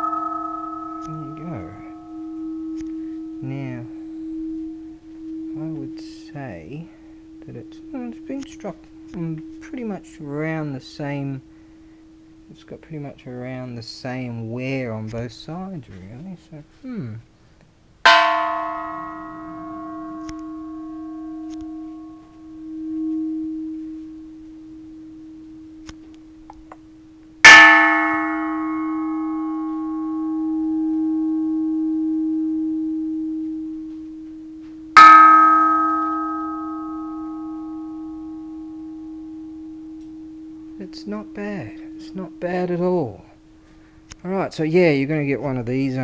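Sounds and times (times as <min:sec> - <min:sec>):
temple bell clang: 0:00.0 - 0:12.4, 0:18.1 - 0:25.2, 0:27.4 - 0:43.9
low hum: 0:00.0 - 0:16.2, 0:18.1 - 0:44.3.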